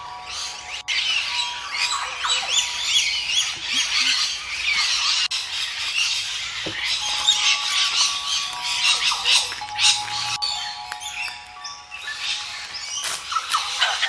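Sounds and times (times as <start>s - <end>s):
many birds calling: 0.0s - 14.0s.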